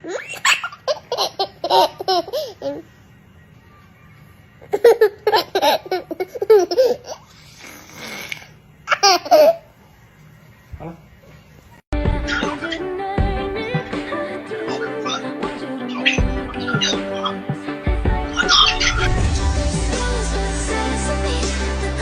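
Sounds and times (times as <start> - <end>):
breathy hiss: 7.1 - 8.6.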